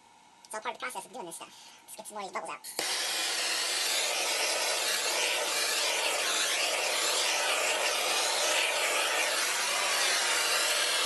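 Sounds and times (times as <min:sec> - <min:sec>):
torch flame hissing: 0:02.8 - 0:11.0.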